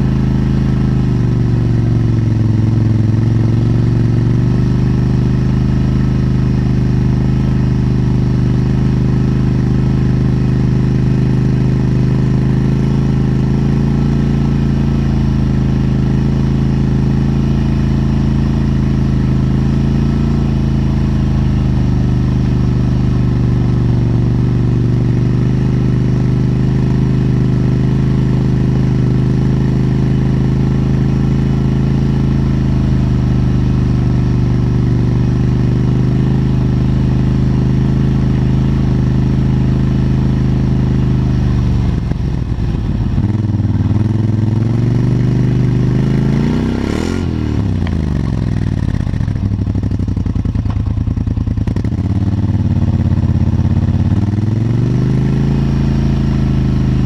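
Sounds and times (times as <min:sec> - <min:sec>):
engine running near exhaust: 0:00.0 - 0:57.0.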